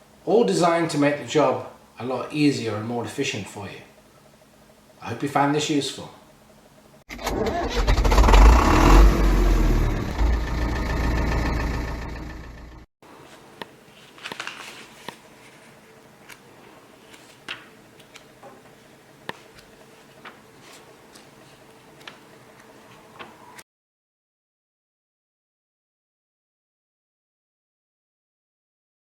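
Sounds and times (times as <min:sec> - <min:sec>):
engine rumbling: 0:07.5 - 0:12.9.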